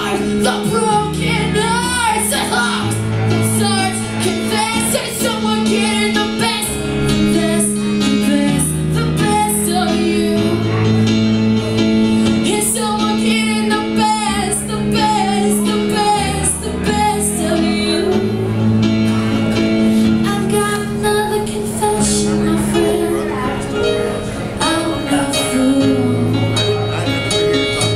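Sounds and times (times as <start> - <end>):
person singing: 20.0 - 27.9.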